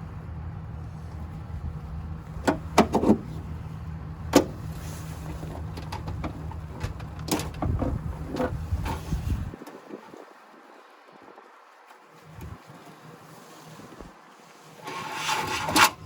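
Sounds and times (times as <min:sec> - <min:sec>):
steady low hum: 0:00.0 - 0:09.5.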